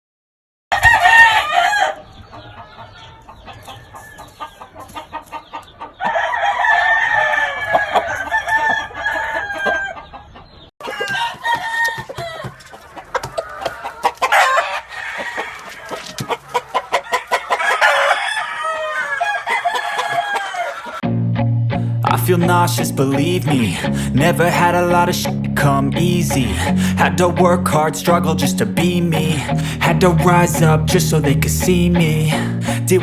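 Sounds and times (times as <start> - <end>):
rooster crowing: 0.7 - 2.1, 6.0 - 10.1, 10.8 - 12.6, 13.2 - 21.0
chicken clucks: 0.8 - 21.0.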